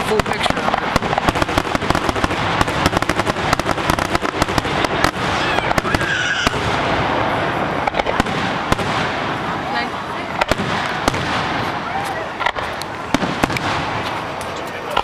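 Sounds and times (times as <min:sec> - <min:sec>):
fireworks popping and banging: 0:00.0 - 0:15.0.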